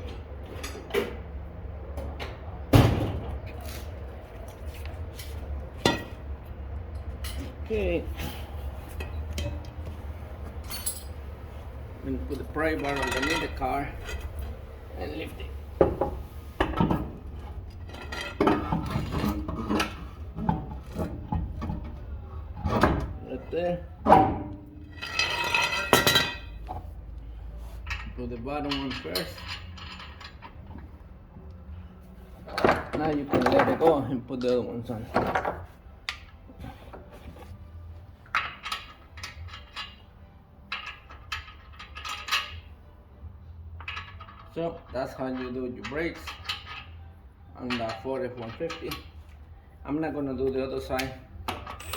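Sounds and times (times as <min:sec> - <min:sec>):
metal lug nuts clinking: 0:00.0 - 0:03.8, 0:04.7 - 0:36.8, 0:38.2 - 0:51.9.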